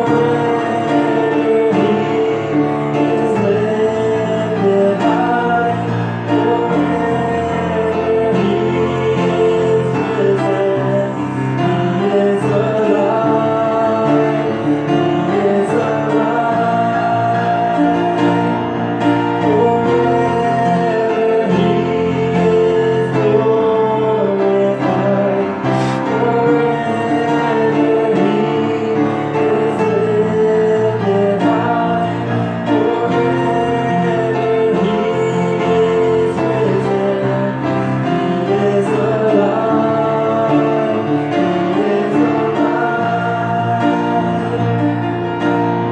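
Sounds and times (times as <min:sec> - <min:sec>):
slow song with singing: 0:00.0 - 0:45.9.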